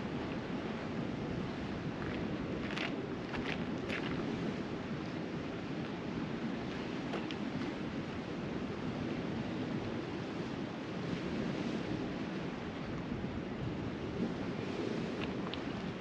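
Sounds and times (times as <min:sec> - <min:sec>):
sea surf breaking on shore: 0:00.0 - 0:16.0
wind: 0:00.0 - 0:16.0.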